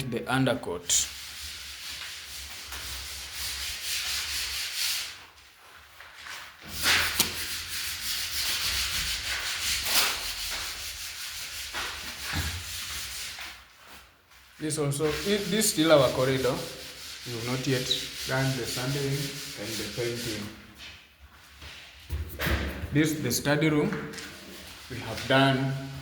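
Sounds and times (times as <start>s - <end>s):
sandpaper rubbing on plaster: 0.9s - 5.4s, 6.6s - 20.8s, 24.3s - 26.0s.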